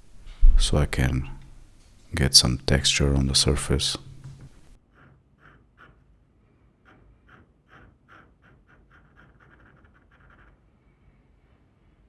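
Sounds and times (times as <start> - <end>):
pencil tip tapping on paper: 3.6 - 4.7.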